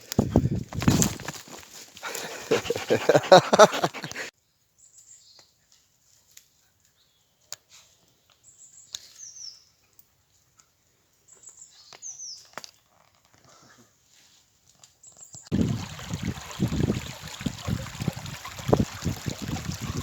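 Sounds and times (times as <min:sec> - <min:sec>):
faint birdsong chirps: 0:08.1 - 0:10.0, 0:11.1 - 0:12.6.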